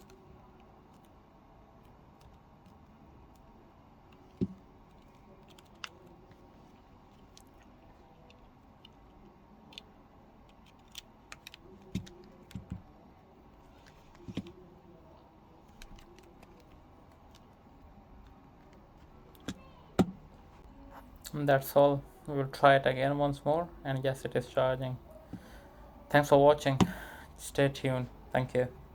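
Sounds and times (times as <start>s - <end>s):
small parts clicking and tapping: 4.1s - 12.8s.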